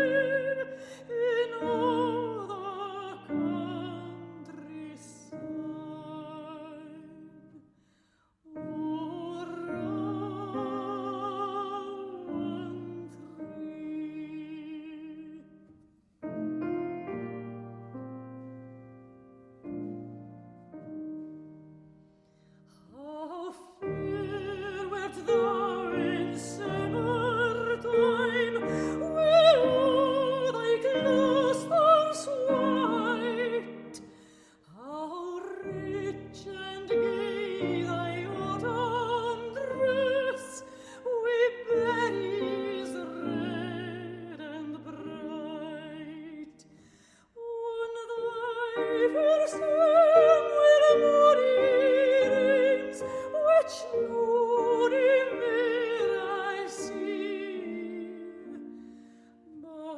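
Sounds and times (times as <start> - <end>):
piano: 0.0 - 59.9
operatic singing: 23.2 - 34.1.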